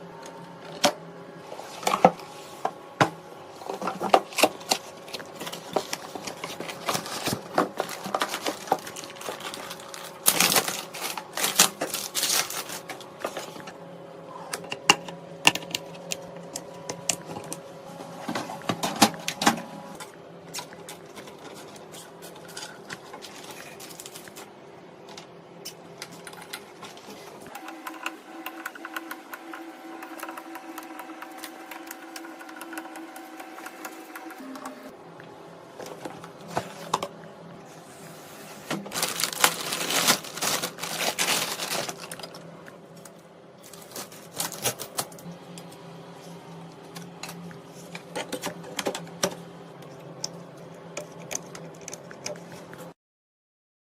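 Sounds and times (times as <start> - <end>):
steady hum: 0.0 - 53.0
computer hardware clicks and rattles: 27.5 - 34.9.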